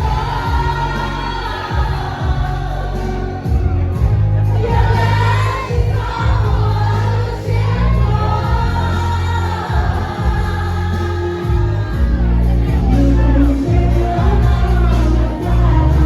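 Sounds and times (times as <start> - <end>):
singing over heavy bass: 0.0 - 16.0.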